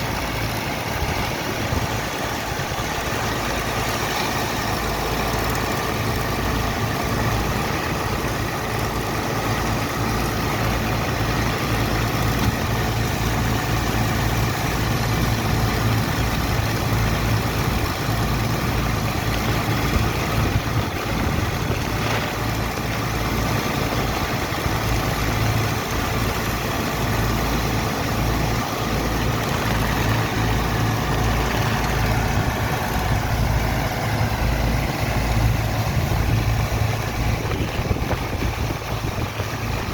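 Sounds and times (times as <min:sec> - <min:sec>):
heavy engine running steadily: 0:00.0 - 0:39.9.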